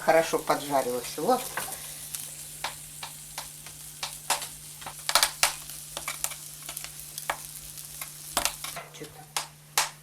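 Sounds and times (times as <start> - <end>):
fish sizzling in a pan: 0.0 - 9.8
utensil tapping and scraping pan: 2.6 - 10.0.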